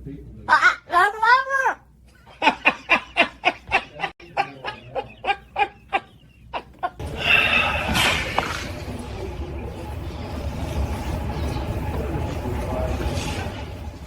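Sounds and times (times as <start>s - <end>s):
person laughing: 2.3s - 7.0s.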